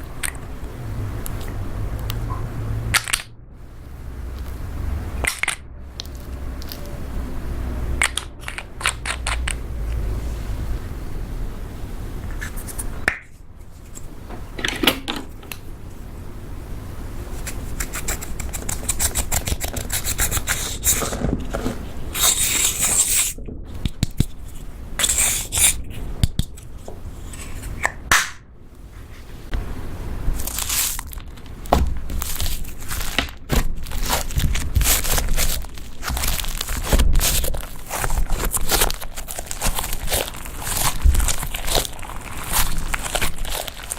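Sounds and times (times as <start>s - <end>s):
slime sticky crackling: 30.4s - 43.9s.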